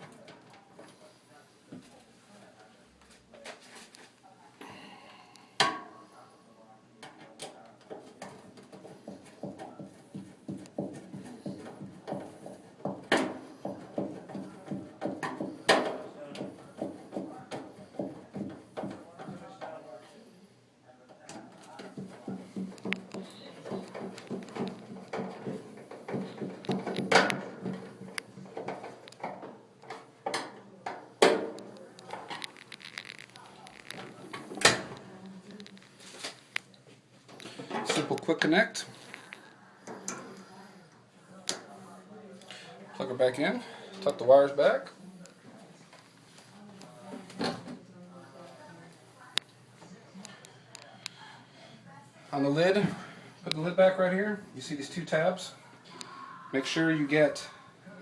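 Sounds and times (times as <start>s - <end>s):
clicks and knocks of dryer parts: 7.0s - 19.8s, 21.2s - 32.6s.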